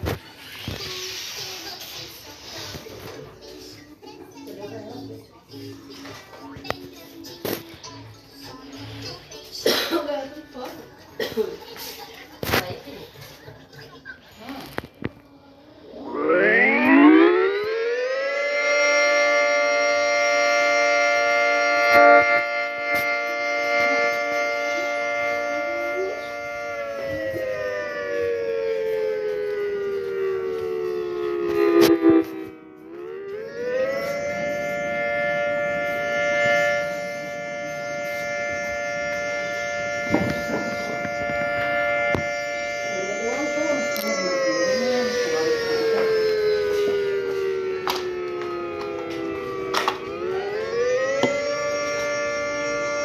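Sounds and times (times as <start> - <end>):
tornado siren wailing: 15.9 - 53.0.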